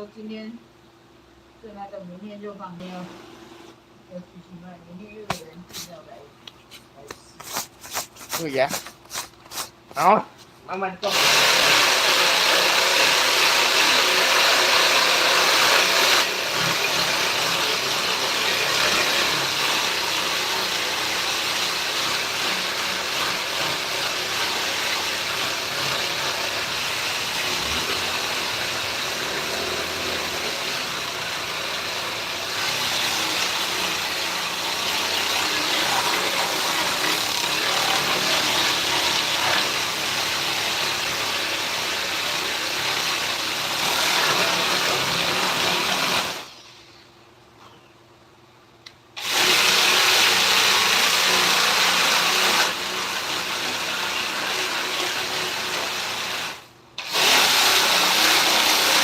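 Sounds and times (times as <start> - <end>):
power tool running: 11.0 - 46.6, 49.2 - 59.0.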